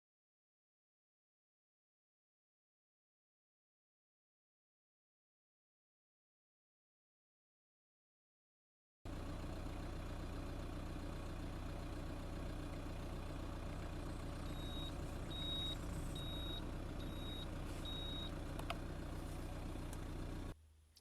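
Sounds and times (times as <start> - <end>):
car engine idling: 9.1 - 21.0.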